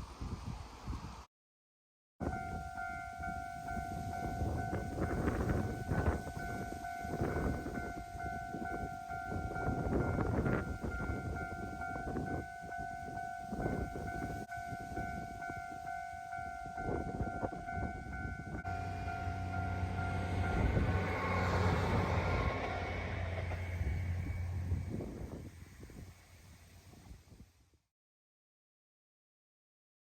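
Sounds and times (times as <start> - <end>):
level-crossing warning bell: 2.2 - 24.8
train passing: 2.2 - 27.3
low gusty rumble: 2.2 - 27.6.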